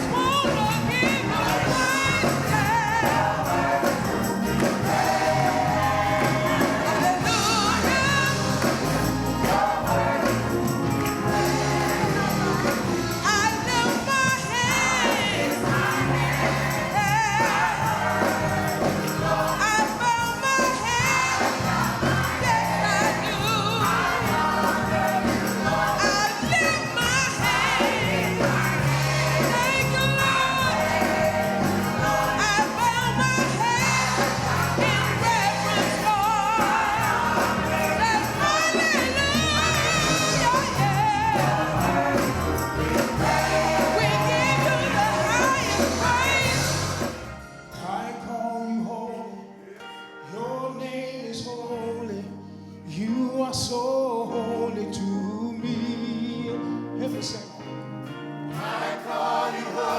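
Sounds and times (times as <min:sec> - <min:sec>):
steady bass line: 0:00.0 - 0:19.6, 0:20.9 - 0:47.3
instrumental accompaniment: 0:00.0 - 0:48.0
gospel choir singing: 0:00.0 - 0:52.2, 0:52.9 - 0:59.9.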